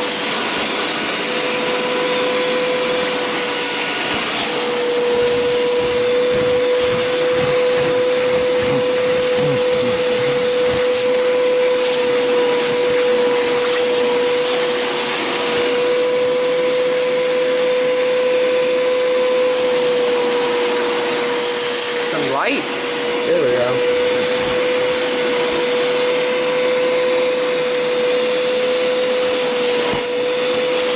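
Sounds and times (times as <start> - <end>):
carpet cleaner motor whine: 0.0 - 30.9
rushing suction noise: 1.3 - 17.7.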